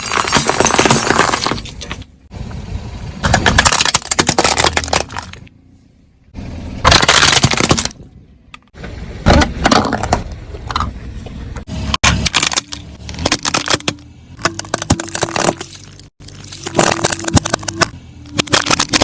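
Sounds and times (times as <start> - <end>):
tyre crushing brittle objects: 0.0 - 2.0, 3.3 - 5.4, 6.9 - 8.0, 12.0 - 19.0.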